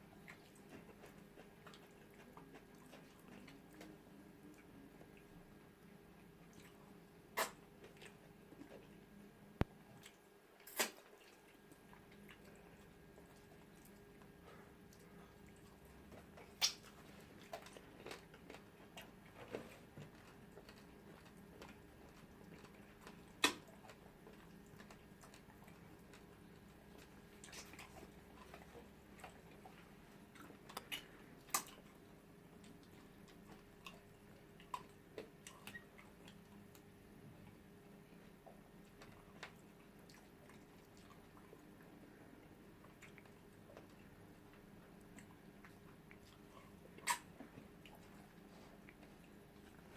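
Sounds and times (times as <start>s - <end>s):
chewing and mouth sounds: 0.0s - 9.0s, 9.8s - 49.9s
faint steady hum: 0.0s - 49.9s.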